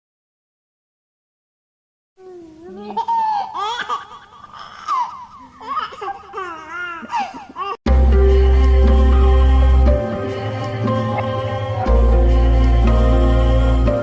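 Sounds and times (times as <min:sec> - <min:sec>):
baby squealing and babbling: 0:02.2 - 0:07.8
loud music with heavy bass: 0:07.9 - 0:14.0.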